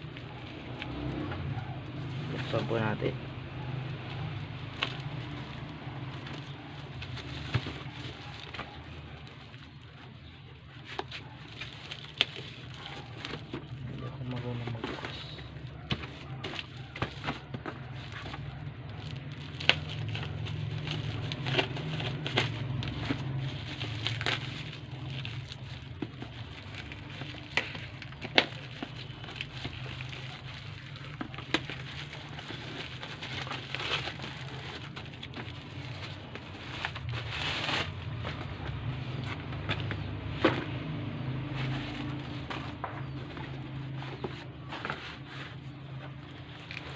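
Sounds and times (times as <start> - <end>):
packaging crinkling: 4.0 - 46.9.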